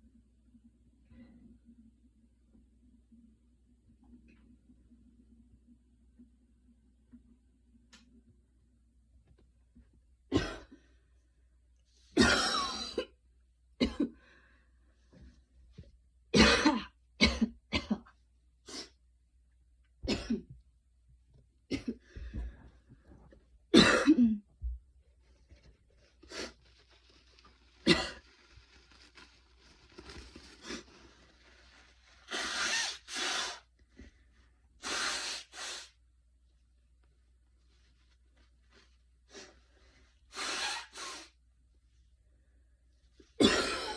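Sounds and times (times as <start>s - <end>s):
woman coughing: 10.3s - 10.7s, 12.2s - 13.1s, 13.8s - 14.1s, 16.4s - 18.1s, 20.1s - 20.5s, 23.8s - 24.4s, 27.8s - 28.2s, 43.4s - 43.9s.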